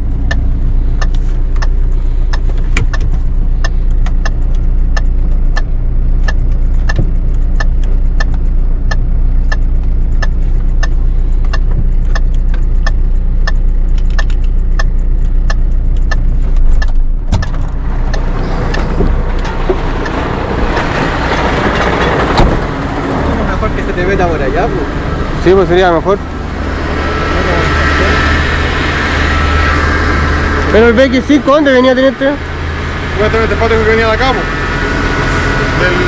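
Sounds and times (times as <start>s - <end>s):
sharp regular ticking: 0.0s - 27.1s
truck engine running: 0.0s - 36.0s
rushing noise: 17.8s - 33.6s.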